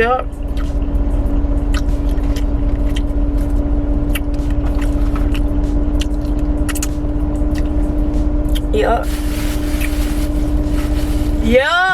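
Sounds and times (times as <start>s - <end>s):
car cabin hum and rumble: 0.0s - 11.9s
person chewing clicks: 0.5s - 0.9s, 1.6s - 7.8s, 8.5s - 8.7s.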